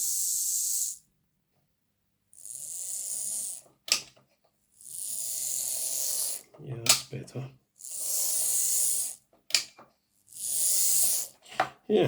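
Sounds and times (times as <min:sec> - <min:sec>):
model train motor whirring: 0:00.0 - 0:01.0, 0:02.4 - 0:04.0, 0:04.7 - 0:07.0, 0:07.8 - 0:09.2, 0:10.2 - 0:11.3
sharp click: 0:03.9 - 0:04.2, 0:06.8 - 0:07.1, 0:09.5 - 0:09.8.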